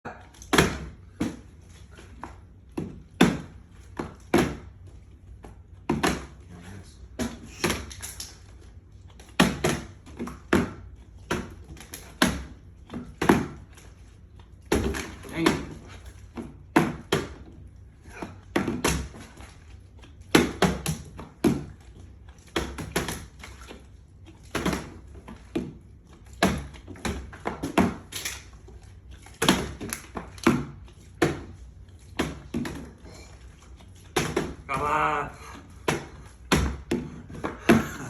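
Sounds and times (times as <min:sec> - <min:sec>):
plastic bottles landing on hard surface: 0:05.8 - 0:06.4, 0:09.3 - 0:13.7, 0:14.7 - 0:17.5, 0:18.2 - 0:19.3, 0:24.5 - 0:25.8, 0:26.4 - 0:28.5, 0:29.4 - 0:33.0, 0:34.1 - 0:34.8, 0:35.8 - 0:38.0.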